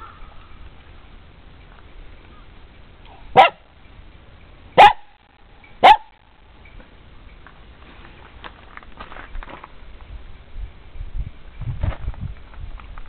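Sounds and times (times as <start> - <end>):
dog barking: 3.3 - 3.6, 4.8 - 5.1, 5.8 - 6.1.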